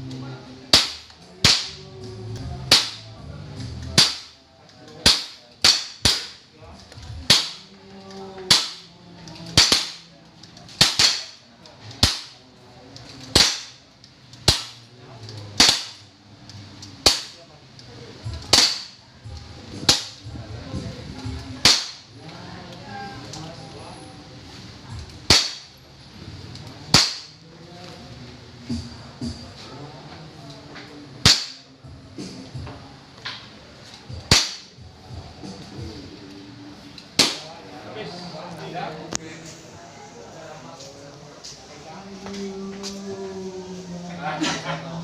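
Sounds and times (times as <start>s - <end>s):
airsoft pistol shots: 0.7s - 1.8s, 2.7s - 3.0s, 4.0s - 4.4s, 5.0s - 6.4s, 7.3s - 7.6s, 8.5s - 8.9s, 9.6s - 10.0s, 10.8s - 11.4s, 12.0s - 12.4s, 13.3s - 13.8s, 15.6s - 16.0s, 18.5s - 19.0s, 21.6s - 22.1s, 25.3s - 25.7s, 26.9s - 27.3s, 31.2s - 31.6s, 34.3s - 34.7s, 37.2s - 37.4s.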